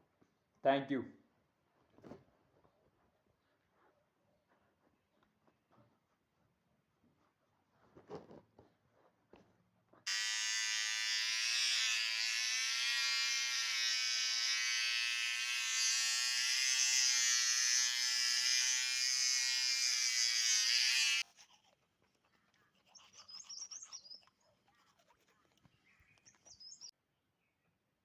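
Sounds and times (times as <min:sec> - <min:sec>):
small electric motor buzzing: 0:10.1 - 0:21.2.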